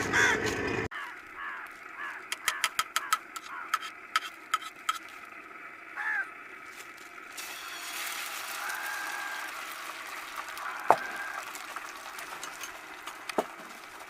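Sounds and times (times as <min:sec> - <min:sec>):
crows cawing: 0:00.0 - 0:03.8, 0:06.0 - 0:06.4, 0:08.5 - 0:09.7, 0:10.5 - 0:11.7
sharp clicks: 0:02.2 - 0:05.0.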